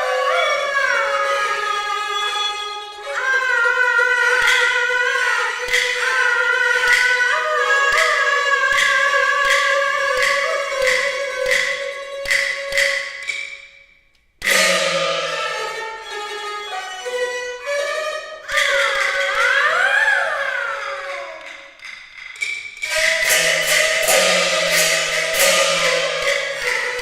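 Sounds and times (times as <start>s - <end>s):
clapper-like beats: 0.2s - 27.0s
loud percussion strike: 14.4s - 16.2s, 22.8s - 27.0s
ringing metal tones bending pitch: 22.4s - 27.0s.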